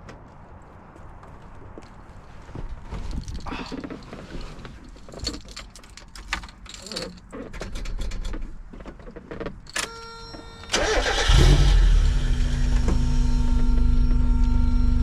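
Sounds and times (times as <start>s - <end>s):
ignition click: 9.7s - 11.8s
car starter cranking: 9.7s - 13.4s.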